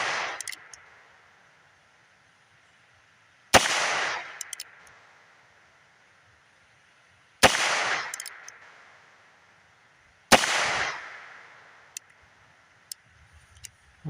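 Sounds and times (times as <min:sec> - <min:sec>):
light clicks: 0:00.3 - 0:00.9, 0:04.3 - 0:05.0, 0:08.0 - 0:08.7, 0:11.9 - 0:12.2, 0:12.8 - 0:13.8.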